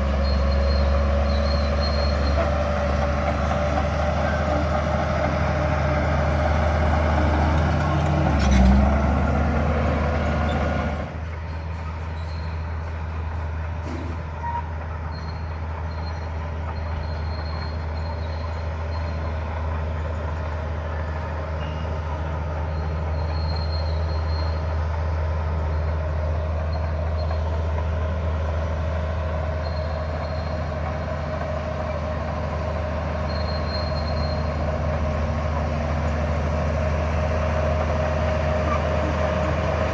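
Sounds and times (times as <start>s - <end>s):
bulldozer diesel engine running: 0.0s - 39.9s.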